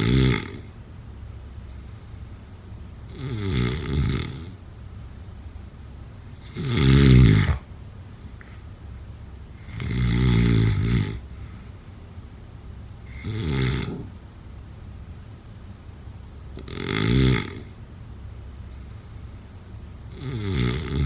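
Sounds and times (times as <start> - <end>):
person snoring: 0.0 - 0.7, 3.1 - 4.6, 6.4 - 7.7, 9.6 - 11.2, 13.1 - 14.1, 16.6 - 17.7, 20.1 - 21.0.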